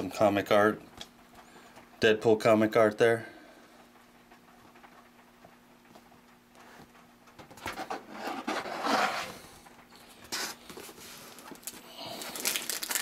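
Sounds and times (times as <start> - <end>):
cardboard box rustling: 7.7 - 9.4.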